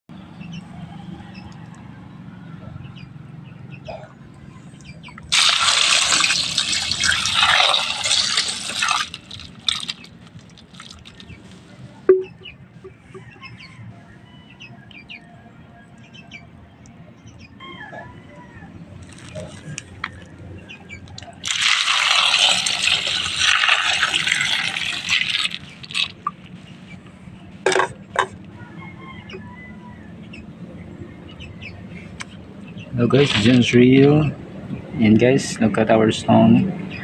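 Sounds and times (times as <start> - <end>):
water pouring and splashing: 5.2 - 11.7, 21.4 - 26.5, 33.2 - 33.7.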